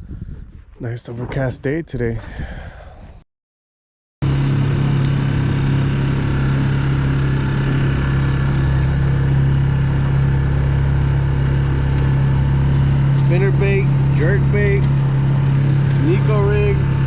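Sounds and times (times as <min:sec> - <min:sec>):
boat engine droning: 0:04.2 - 0:17.0.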